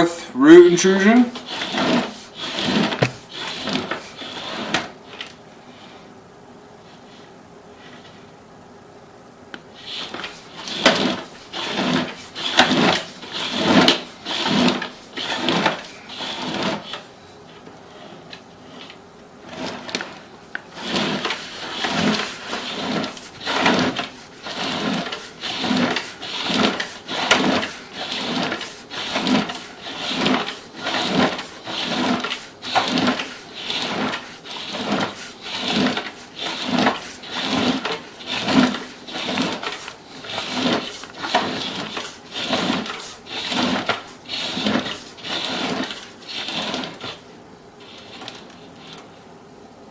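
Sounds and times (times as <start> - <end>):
push cable rattling: 20.8 - 47.1.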